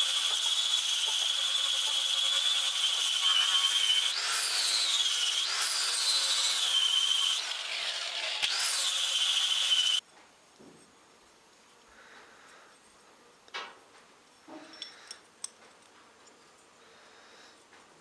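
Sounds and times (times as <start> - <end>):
electric grinder grinding steel: 0.0 - 10.0.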